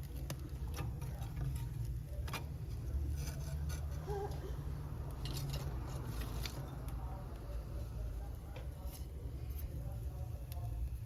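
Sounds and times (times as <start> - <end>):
wood fire crackling: 0.0 - 4.0.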